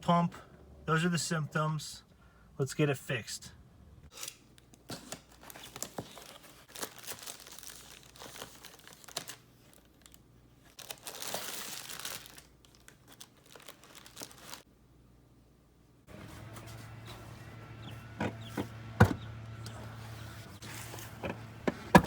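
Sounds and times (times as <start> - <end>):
material crinkling and rustling: 5.1 - 14.7.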